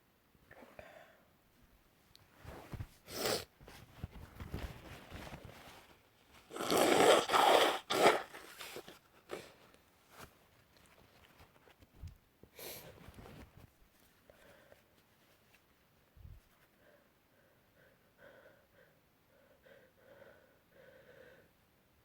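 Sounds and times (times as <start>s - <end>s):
person sneezing: 6.6s - 9.5s.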